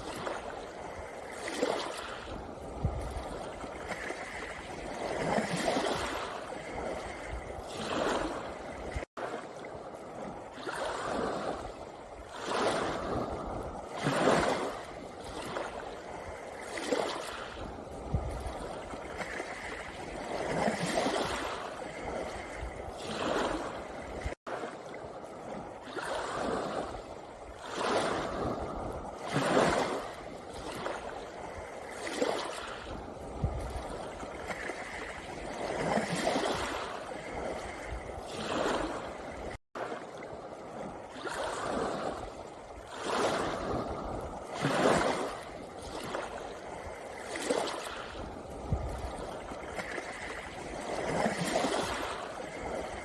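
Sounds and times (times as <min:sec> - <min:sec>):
waves washing over pebbles: 0:00.0 - 0:53.0.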